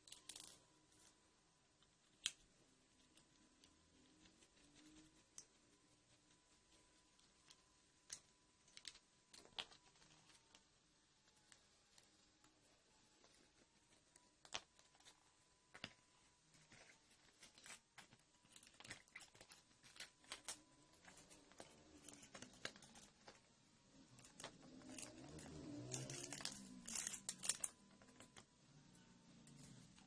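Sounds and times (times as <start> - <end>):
rustling and crinkling: 6.2 - 28.5.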